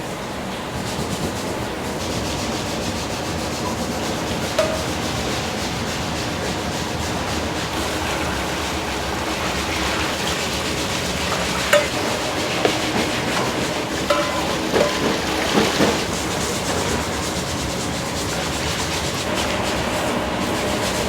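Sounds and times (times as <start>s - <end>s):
hiss and rumble of cooking equipment: 0.0s - 21.0s
utensils clinking: 3.6s - 5.9s, 7.7s - 17.8s.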